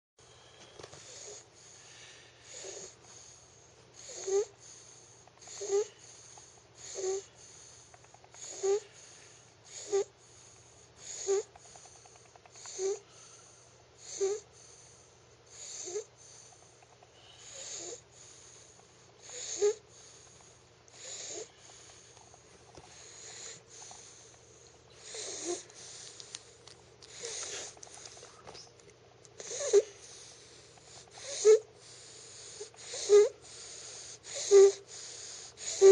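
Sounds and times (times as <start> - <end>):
child snoring: 0.9 - 1.5, 2.4 - 3.3, 3.9 - 10.2, 11.0 - 13.1, 14.0 - 14.6, 15.5 - 16.2, 17.4 - 18.1, 19.2 - 22.0, 23.0 - 24.2, 24.9 - 26.1, 27.1 - 28.1, 29.4 - 35.9.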